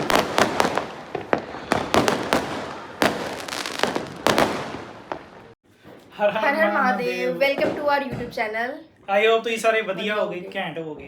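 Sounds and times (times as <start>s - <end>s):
firecrackers banging: 0.0s - 5.6s.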